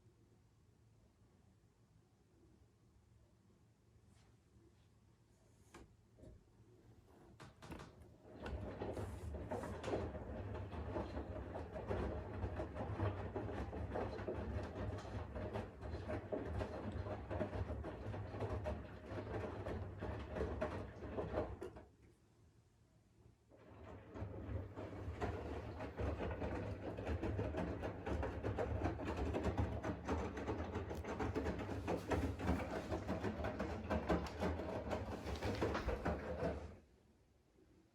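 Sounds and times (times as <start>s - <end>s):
laundry tumbling: 30.2s - 36.8s.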